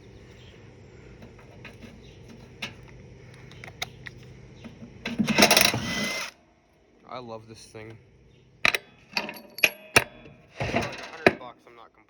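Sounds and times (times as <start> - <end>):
impact wrench rattle: 5.0 - 6.3, 8.7 - 11.5.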